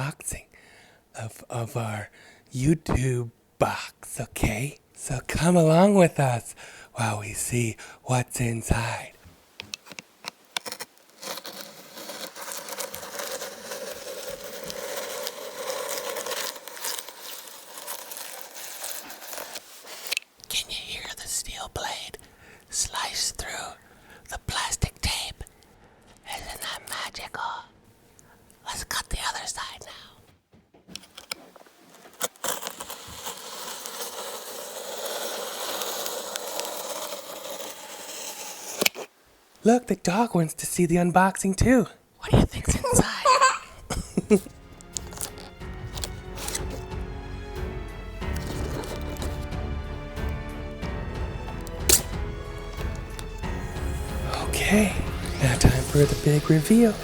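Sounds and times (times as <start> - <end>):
blade slicing packing tape: 9.9 - 20.3, 32.1 - 39.1, 44.3 - 46.8, 48.2 - 49.5, 51.5 - 54.1.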